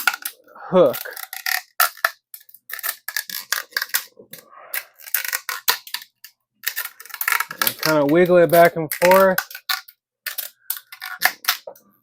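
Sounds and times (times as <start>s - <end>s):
rim strip clicking and crackling: 0.0s - 11.9s.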